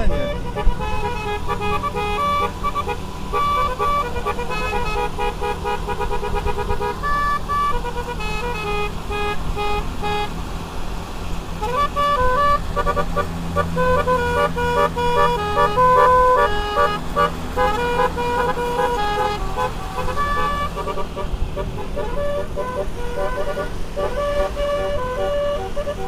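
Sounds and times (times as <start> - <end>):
horn playing a fast tune: 0.0 - 10.3, 11.6 - 26.0
low engine hum: 0.0 - 26.0.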